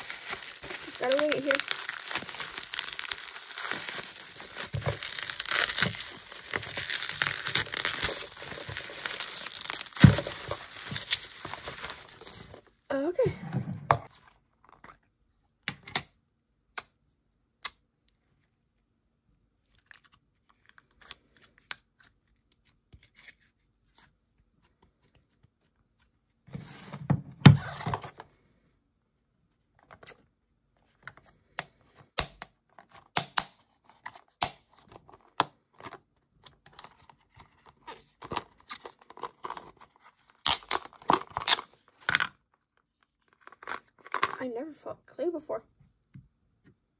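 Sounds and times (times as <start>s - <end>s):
packaging rustling: 0.0s - 12.8s, 37.6s - 41.8s.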